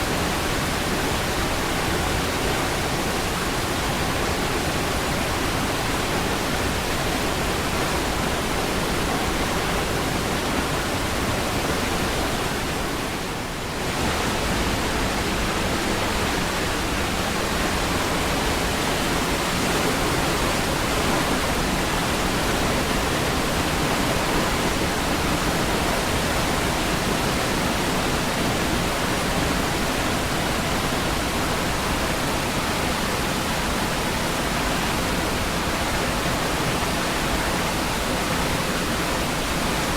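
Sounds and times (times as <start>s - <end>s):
waterfall rushing: 0.0s - 39.9s.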